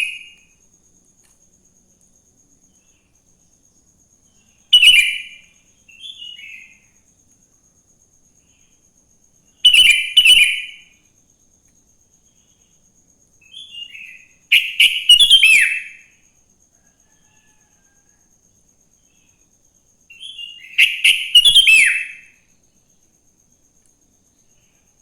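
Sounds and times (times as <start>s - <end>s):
bulbul singing: 4.7s - 6.8s, 20.2s - 22.3s.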